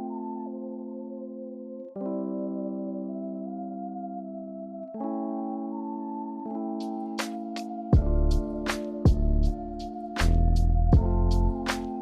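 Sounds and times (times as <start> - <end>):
synth chords: 0.0 - 12.0
pulsing bass: 8.0 - 8.5, 9.1 - 11.6.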